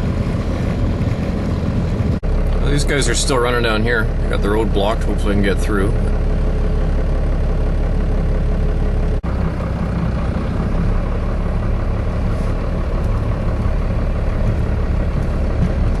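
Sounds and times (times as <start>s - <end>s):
vehicle engine droning: 0.0s - 16.0s.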